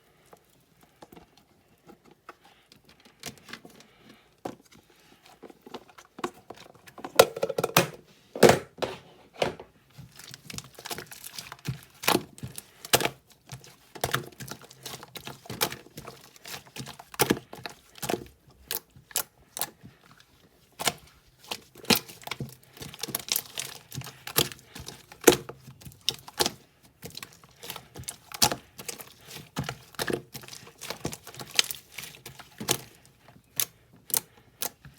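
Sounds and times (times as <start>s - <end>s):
small objects clicking and crinkling: 10.0s - 20.0s, 20.7s - 34.9s.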